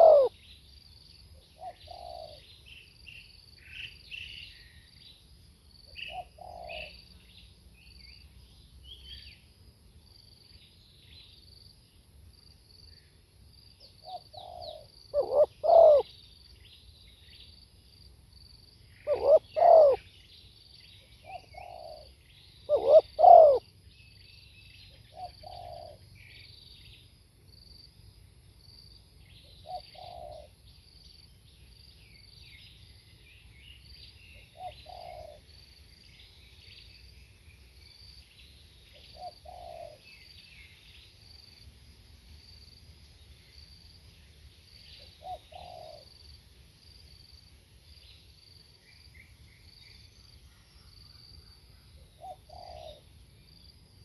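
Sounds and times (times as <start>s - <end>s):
dove cooing: 0.0s - 0.3s, 1.6s - 2.4s, 6.0s - 7.0s, 14.0s - 16.1s, 19.0s - 20.0s, 21.2s - 22.1s, 22.7s - 23.6s, 25.1s - 26.0s, 29.6s - 30.5s, 34.5s - 35.4s, 39.0s - 40.0s, 45.2s - 46.1s, 52.2s - 53.0s
small birds chirping: 0.0s - 9.5s, 13.8s - 17.6s, 18.8s - 27.2s, 28.6s - 41.7s, 42.3s - 46.4s, 47.2s - 54.0s.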